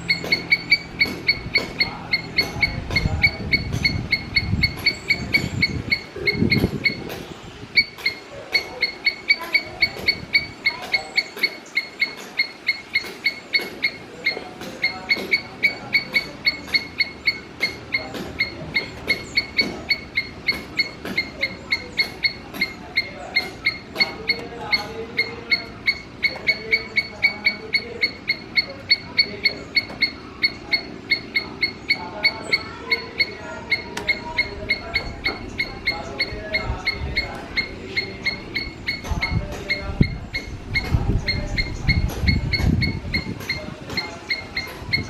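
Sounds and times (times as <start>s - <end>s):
squirrel chirping: 0.0s - 45.0s.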